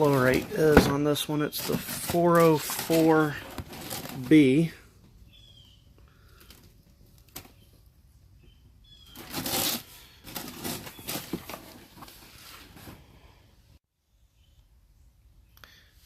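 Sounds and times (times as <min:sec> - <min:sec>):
packaging rustling: 0:00.0 - 0:04.7, 0:09.1 - 0:13.0.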